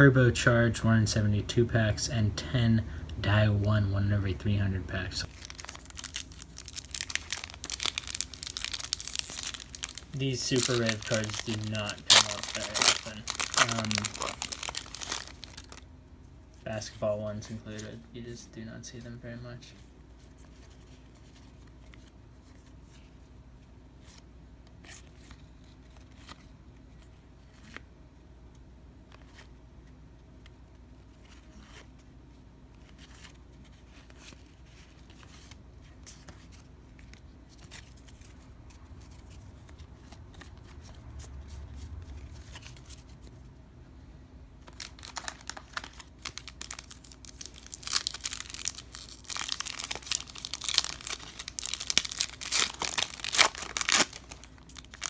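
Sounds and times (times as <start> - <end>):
card wrapping tearing and crinkling: 5.2 - 15.8, 44.6 - 55.0.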